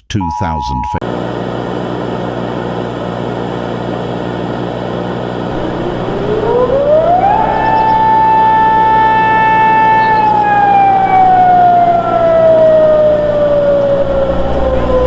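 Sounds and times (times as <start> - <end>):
low hum: 5.4 - 15.0
air-raid siren wailing: 5.5 - 15.0.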